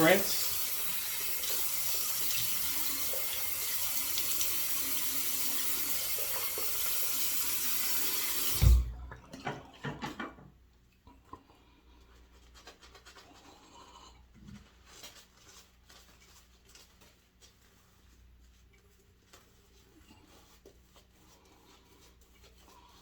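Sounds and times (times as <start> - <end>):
sink tap running: 0.0 - 9.0
faint handling noises: 11.9 - 23.0.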